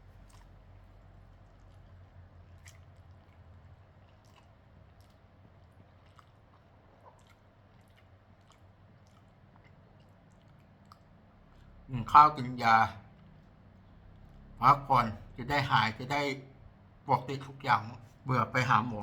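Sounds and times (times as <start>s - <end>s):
person chewing food: 0.0s - 11.9s, 13.0s - 14.6s
low steady hum: 0.0s - 19.0s.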